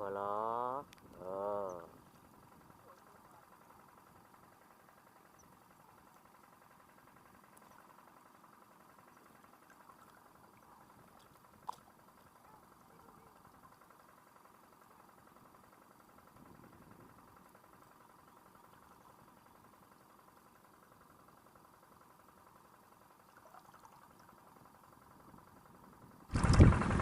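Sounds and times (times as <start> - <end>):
thin hum: 8.8 - 14.0, 26.3 - 27.0.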